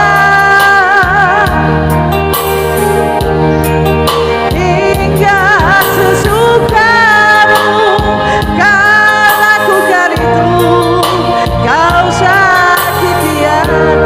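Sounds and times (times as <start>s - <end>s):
bass and keyboard accompaniment: 0.0s - 14.0s
singer drawing out long notes: 4.5s - 14.0s.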